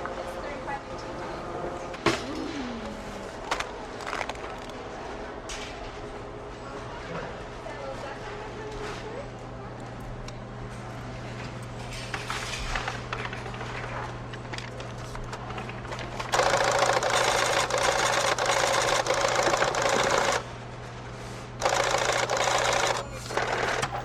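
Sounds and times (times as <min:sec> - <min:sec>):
receipt printer chattering: 0:16.2 - 0:20.4, 0:21.6 - 0:24.0.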